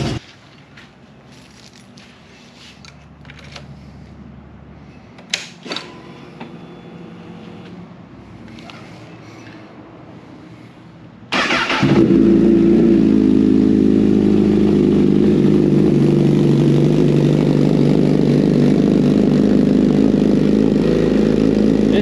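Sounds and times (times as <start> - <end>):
car engine cranking: 11.3 - 12.4
car engine idling: 11.3 - 22.0.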